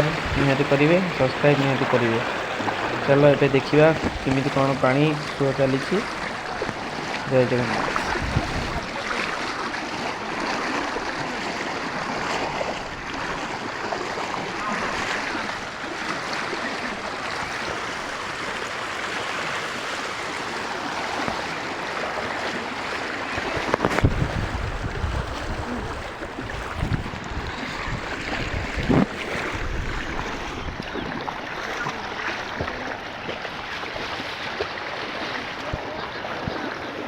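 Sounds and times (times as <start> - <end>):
wind buffeting microphone: 0.0 - 9.2, 23.3 - 33.3
floodwater rushing: 0.0 - 37.0.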